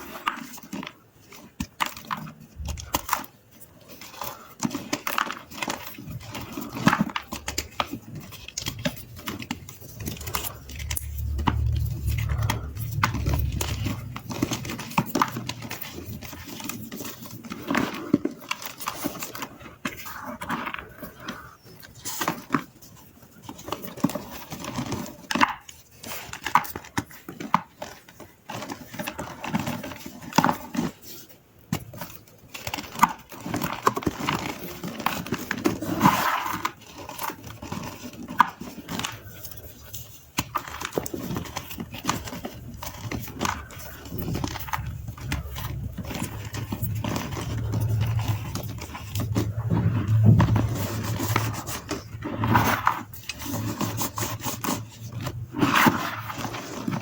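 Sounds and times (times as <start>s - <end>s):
low rubbing rumble: 8.8s - 16.4s, 42.7s - 53.7s.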